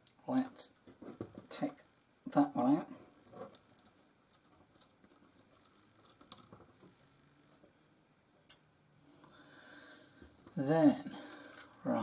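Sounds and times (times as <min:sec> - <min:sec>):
screwdriver ticking and scraping: 0:03.5 - 0:06.5.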